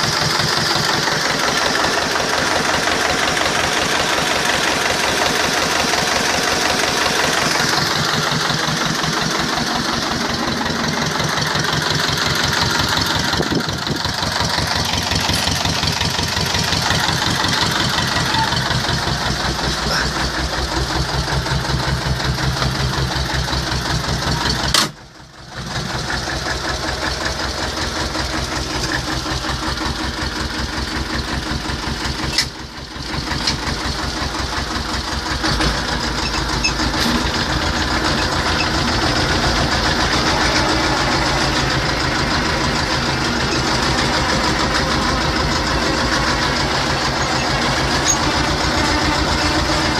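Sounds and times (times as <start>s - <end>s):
diesel tractor engine running: 0.0s - 49.9s.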